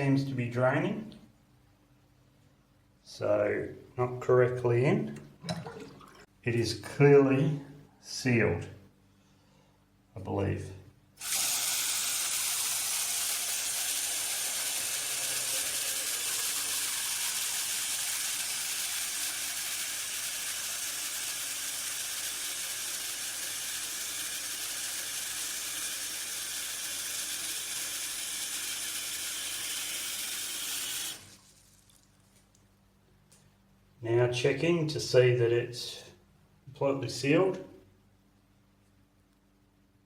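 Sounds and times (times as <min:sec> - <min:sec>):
tap running into basin: 0:05.4 - 0:06.3.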